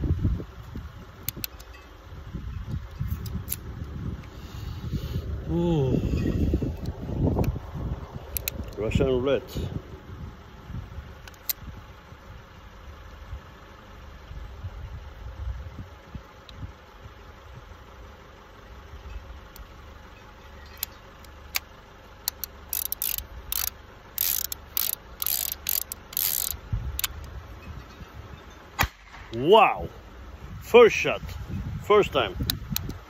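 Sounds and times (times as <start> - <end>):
low steady rumble: 0.0 - 33.0
revolver metallic clicks: 1.2 - 1.9, 8.2 - 9.0, 11.2 - 11.7, 20.4 - 29.4, 32.4 - 33.0
revolver cylinder ratcheting: 8.2 - 8.8, 20.6 - 27.4.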